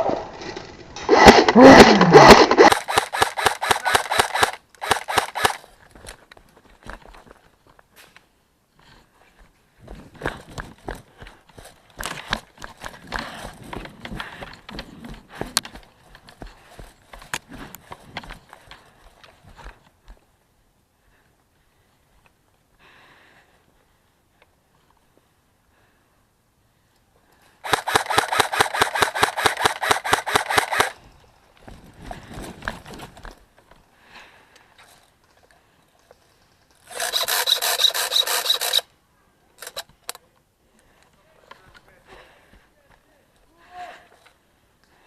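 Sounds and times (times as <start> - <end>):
sharp clicks: 1.0 - 5.6, 27.6 - 31.0
airsoft gun firing burst: 1.1 - 5.6, 27.6 - 31.0.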